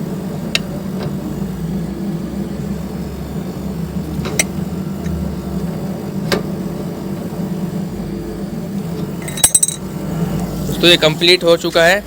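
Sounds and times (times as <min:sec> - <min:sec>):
air conditioner unit humming: 0:00.0 - 0:12.0
sharp metallic clinks: 0:09.2 - 0:09.9.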